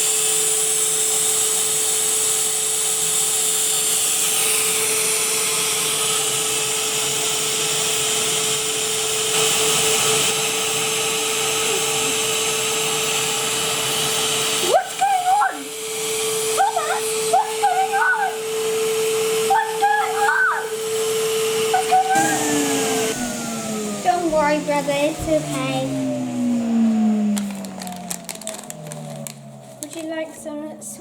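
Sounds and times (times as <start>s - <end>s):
vacuum cleaner running: 0.0s - 31.0s
high wavering voice crying out: 19.5s - 20.8s.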